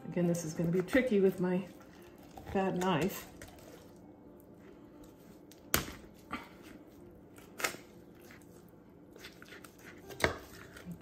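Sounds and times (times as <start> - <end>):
knife cracking through bone: 7.4 - 7.9.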